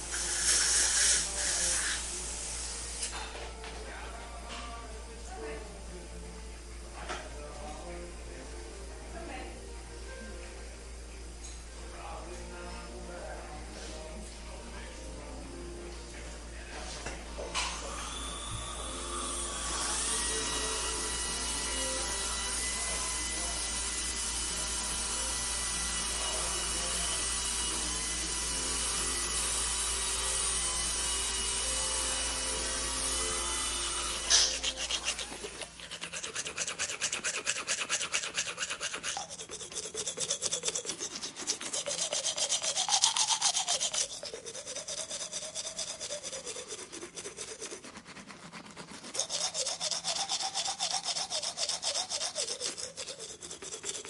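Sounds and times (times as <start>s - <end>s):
rhythmic scraping strokes: 0.0s - 3.3s, 16.8s - 54.0s
machine whirring hum: 0.0s - 54.0s.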